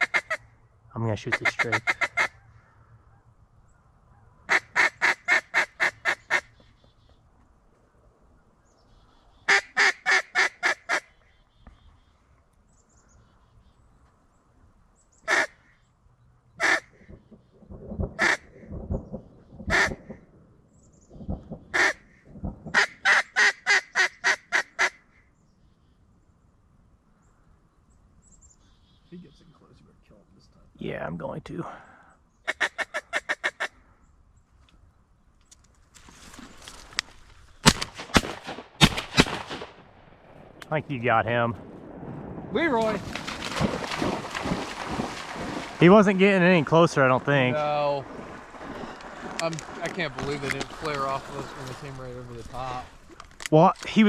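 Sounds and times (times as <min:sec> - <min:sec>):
duck call quacks: 0:00.0 - 0:00.4, 0:01.3 - 0:02.4, 0:04.5 - 0:06.5, 0:09.5 - 0:11.1, 0:15.3 - 0:15.6, 0:16.6 - 0:16.9, 0:18.2 - 0:18.6, 0:19.7 - 0:20.0, 0:21.8 - 0:22.0, 0:22.8 - 0:25.0, 0:32.5 - 0:33.8.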